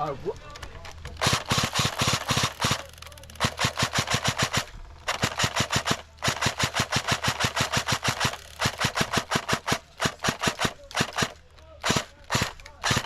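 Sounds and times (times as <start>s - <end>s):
airsoft gun firing full-auto: 1.2s - 13.0s.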